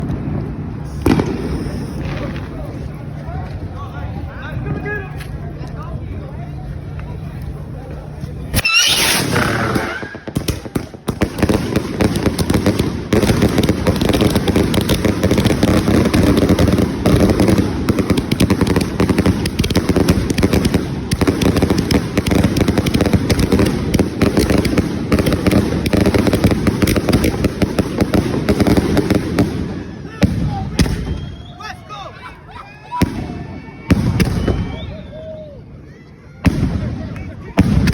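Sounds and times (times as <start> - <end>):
firework crackling pops: 0.0 - 3.0, 8.5 - 31.4, 33.0 - 34.8.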